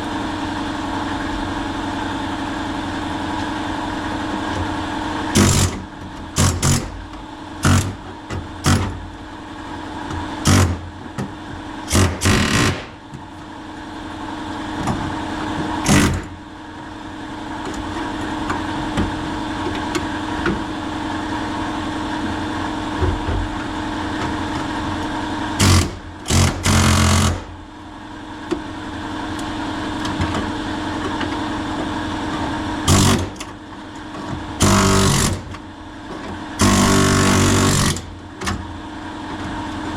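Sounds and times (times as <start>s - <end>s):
air compressor running: 0.0s - 39.9s
air chisel hammering sheet metal: 11.9s - 13.0s.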